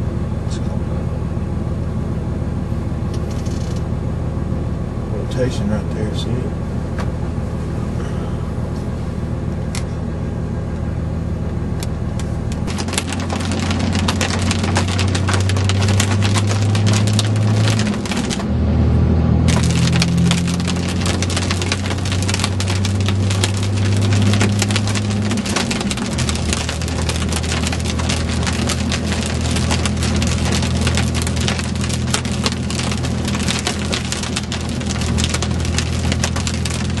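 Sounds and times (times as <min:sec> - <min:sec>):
engine and road drone: 0:00.0 - 0:37.0
heavy rain hitting a vehicle: 0:12.6 - 0:18.5, 0:19.4 - 0:37.0.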